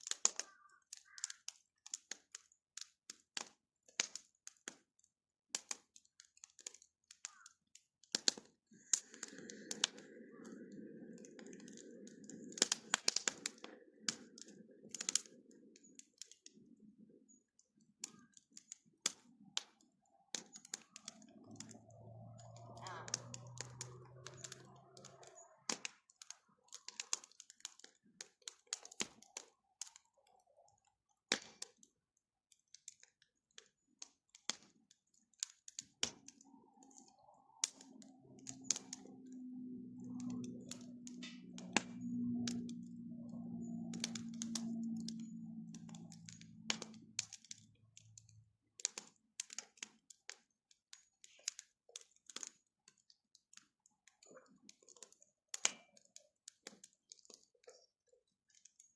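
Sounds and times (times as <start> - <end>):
bonfire crackling and popping: 0.0 - 58.9
low steady hum: 37.8 - 47.1.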